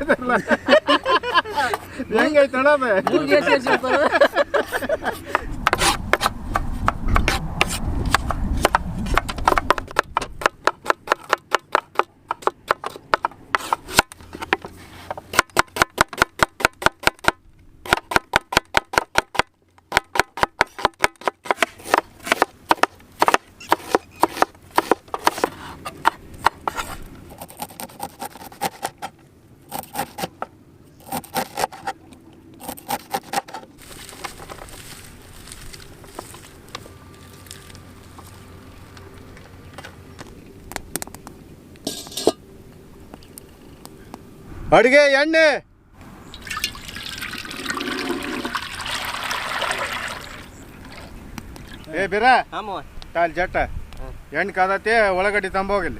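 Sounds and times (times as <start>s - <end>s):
knife chopping on wooden board: 5.3s - 14.7s, 15.3s - 29.1s.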